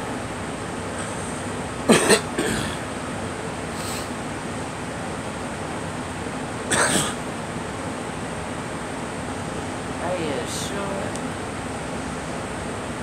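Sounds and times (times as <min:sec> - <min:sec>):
person coughing: 0:01.9 - 0:02.8, 0:06.7 - 0:07.2.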